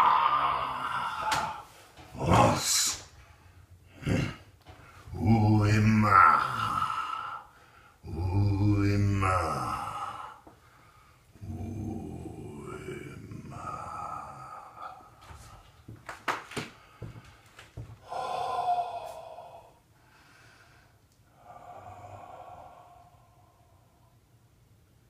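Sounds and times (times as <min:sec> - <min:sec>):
man breathing forcefully: 0:16.7 - 0:23.8.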